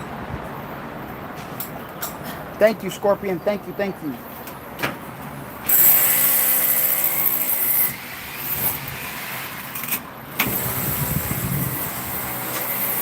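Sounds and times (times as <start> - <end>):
power tool running: 5.6 - 13.0.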